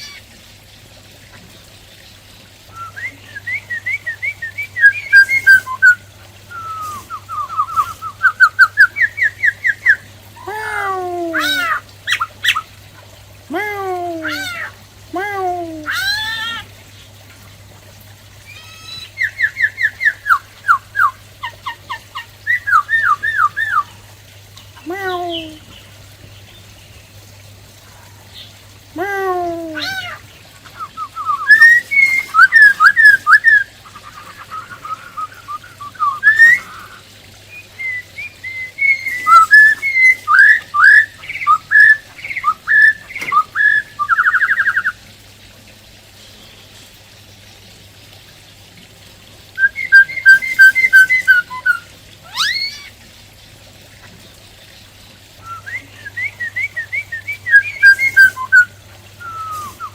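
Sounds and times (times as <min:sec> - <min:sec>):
bird singing whistled notes: 0:02.7 - 0:10.0, 0:30.8 - 0:33.7, 0:34.6 - 0:44.9, 0:49.6 - 0:52.8, 0:55.4 - 0:59.9.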